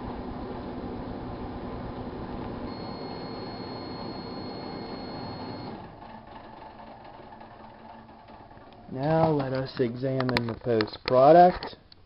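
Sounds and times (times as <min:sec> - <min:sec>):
microwave oven humming: 0:00.0 - 0:09.2
thin high whine: 0:02.7 - 0:05.9.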